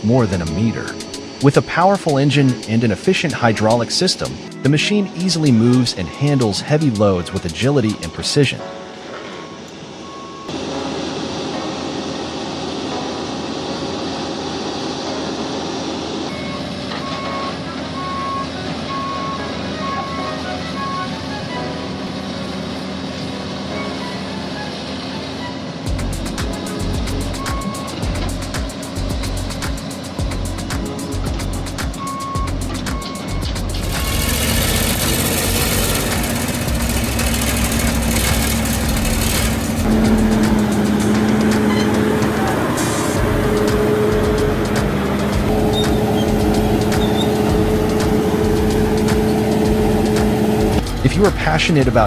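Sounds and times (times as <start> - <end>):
heavy machinery engine running: 25.9 - 52.0.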